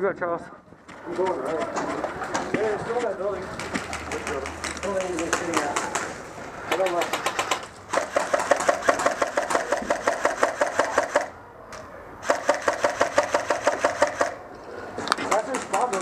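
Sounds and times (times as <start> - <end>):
airsoft gun firing bursts: 6.7 - 11.3, 12.2 - 14.4.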